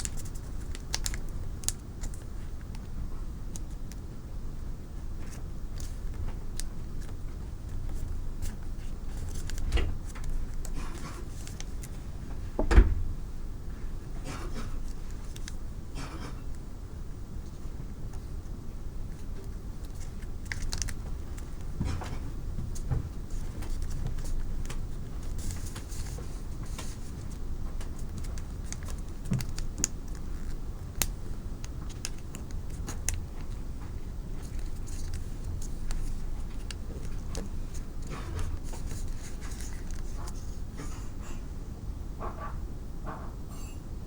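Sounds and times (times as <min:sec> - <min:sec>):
paper rustling and crinkling: 0:00.0 - 0:02.9, 0:05.2 - 0:12.0, 0:19.1 - 0:31.1, 0:31.7 - 0:40.6
steady low hum: 0:00.0 - 0:44.0.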